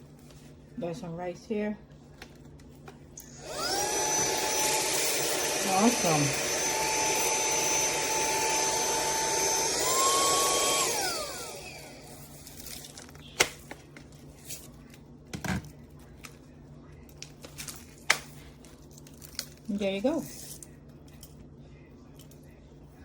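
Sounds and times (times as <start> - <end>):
handheld vacuum running: 3.2 - 12.4.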